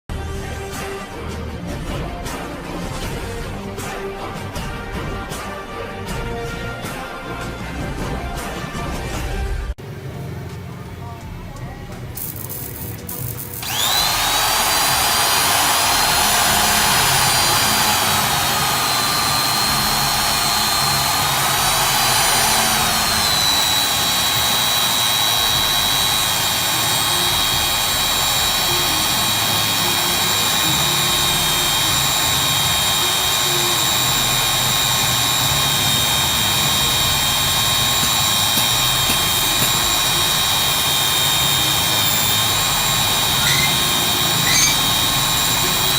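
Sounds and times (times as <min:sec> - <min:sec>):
drill motor whining: 0:12.2 - 0:45.9.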